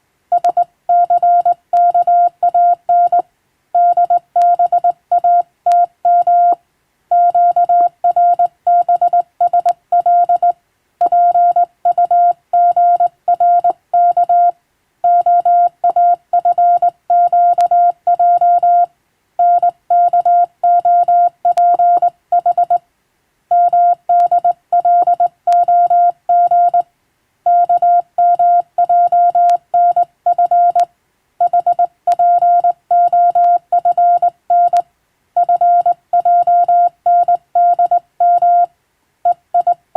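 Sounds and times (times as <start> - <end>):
morse code beeping: 3.8 - 14.5, 15.1 - 22.8, 23.5 - 26.8, 27.5 - 30.8, 31.4 - 34.8, 35.4 - 38.7.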